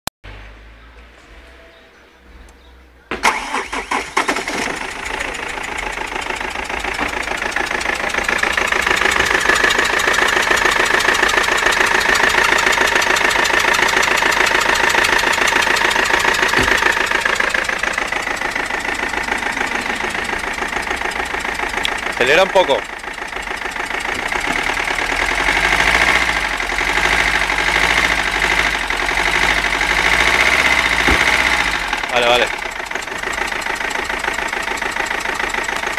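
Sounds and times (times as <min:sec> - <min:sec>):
diesel engine starting and idling: 0:00.3 - 0:35.9.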